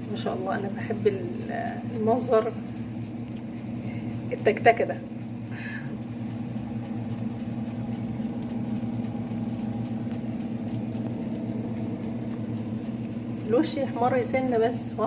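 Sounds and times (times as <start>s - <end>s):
electric oven humming: 0.0s - 15.0s.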